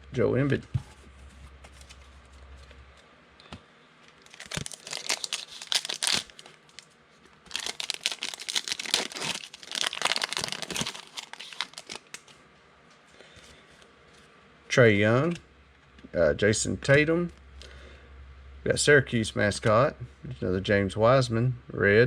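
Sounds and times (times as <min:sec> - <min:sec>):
card pack wrapper crinkling and tearing: 0:04.1 - 0:12.4.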